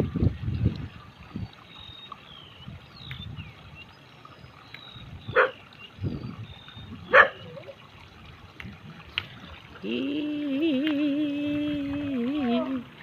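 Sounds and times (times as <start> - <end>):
small birds chirping: 1.6 - 7.8
dog barking: 5.4 - 5.6, 7.1 - 7.5.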